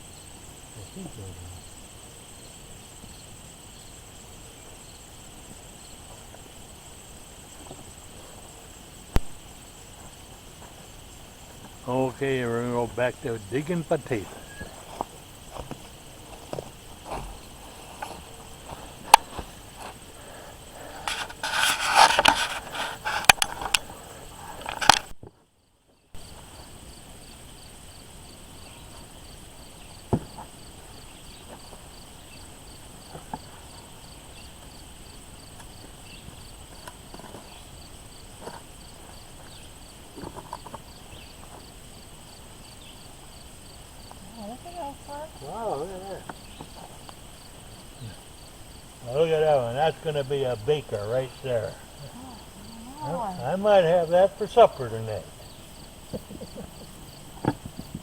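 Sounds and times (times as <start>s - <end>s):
insects chirring: 0.0s - 58.0s
digging in soil: 11.9s - 23.9s.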